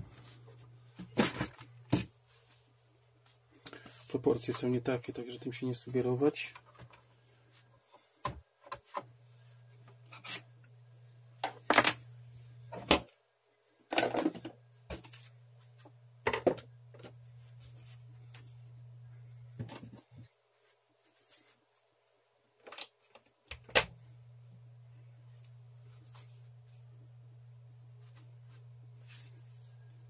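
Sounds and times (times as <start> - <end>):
low steady hum: 8.9 - 21.5, 23.5 - 30.0.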